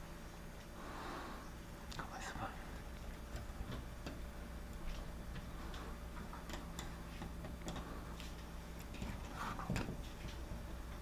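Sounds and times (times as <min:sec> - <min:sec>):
steady low hum: 0:00.0 - 0:11.0
light clicks and taps: 0:02.8 - 0:10.6.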